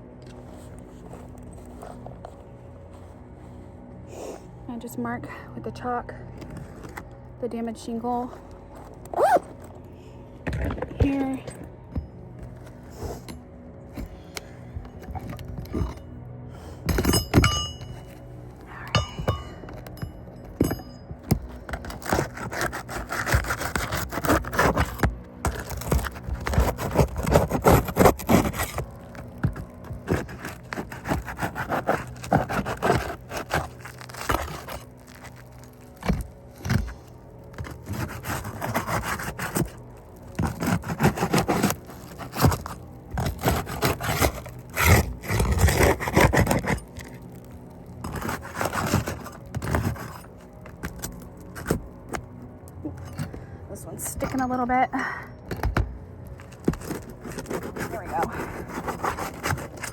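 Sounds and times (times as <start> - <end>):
roof shingles being scraped: 21.3 - 52.4, 56.2 - 59.9.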